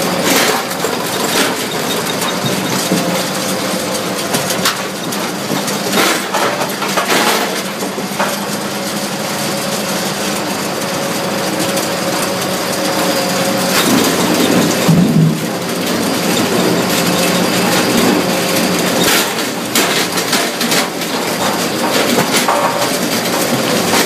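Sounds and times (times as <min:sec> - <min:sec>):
knocks and clatter of logs: 0:00.0 - 0:24.0.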